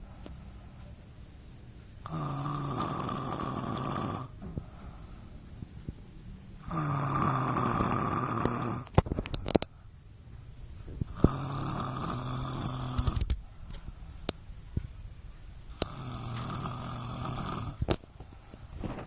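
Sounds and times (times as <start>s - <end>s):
quiet breathing: 0.0s - 15.1s, 15.7s - 19.0s
woman snoring: 2.0s - 4.4s, 6.6s - 8.9s, 11.1s - 13.2s, 15.8s - 17.9s.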